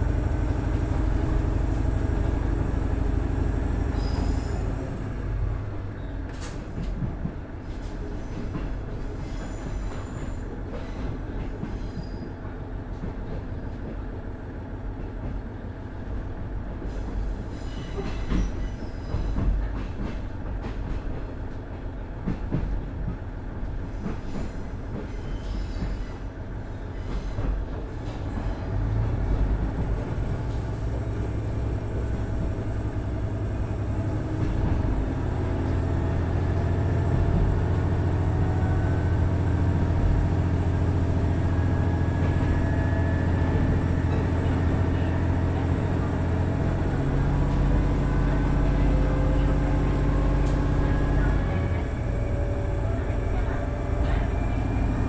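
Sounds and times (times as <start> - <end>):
wheel squeal: 4.0 - 4.8
train wheels clacking on rails: 6.2 - 14.1, 16.8 - 55.0.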